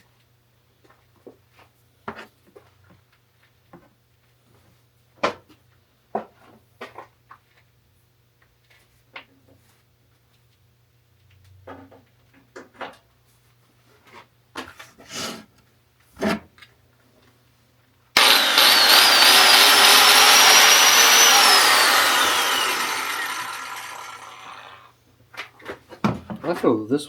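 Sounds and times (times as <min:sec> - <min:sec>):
biscuit joiner whine: 0:18.2 - 0:24.9.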